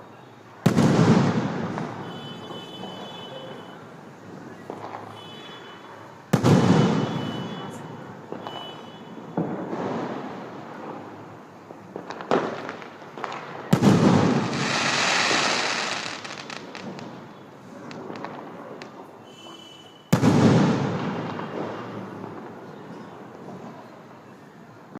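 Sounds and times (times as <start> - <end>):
fireworks bangs with echo: 0.6 - 24.1
firework pops and crackling hiss: 4.6 - 5.2, 8.3 - 8.8, 9.4 - 19.2.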